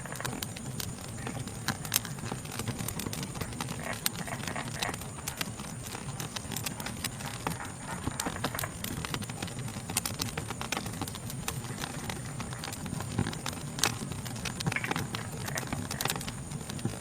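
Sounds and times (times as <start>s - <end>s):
night insects droning: 0.0s - 17.0s
wood fire crackling: 0.0s - 17.0s.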